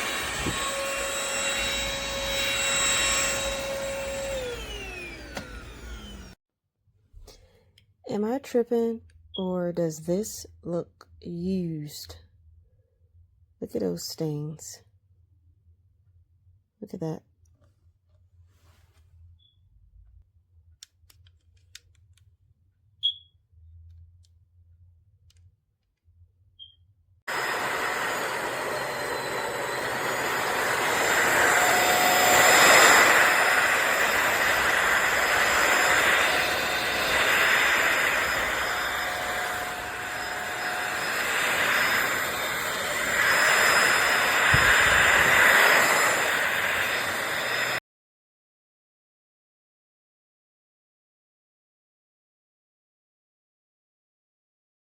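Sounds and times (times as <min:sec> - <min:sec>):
stick vacuum running: 0:00.0 - 0:06.4, 0:27.3 - 0:47.8.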